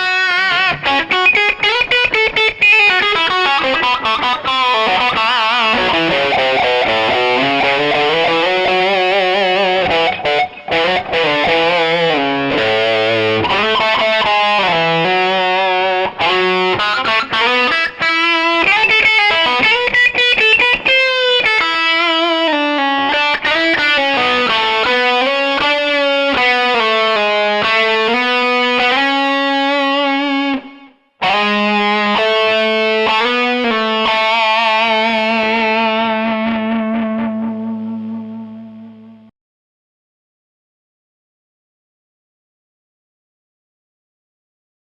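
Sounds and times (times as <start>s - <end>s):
distorted electric guitar lead: 0.0s - 39.3s.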